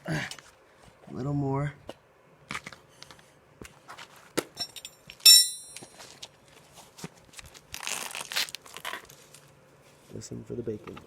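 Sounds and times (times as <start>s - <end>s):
metal parts knocking and clinking: 4.6s - 5.9s
loud ringing metallic clank: 5.2s - 5.8s.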